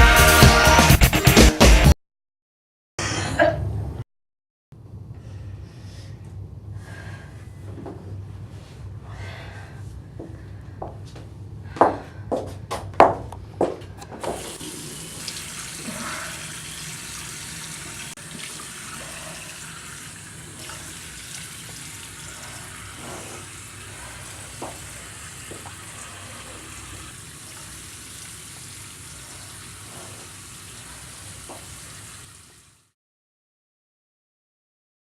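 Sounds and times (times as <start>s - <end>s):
tap water running: 14.2s - 33.0s.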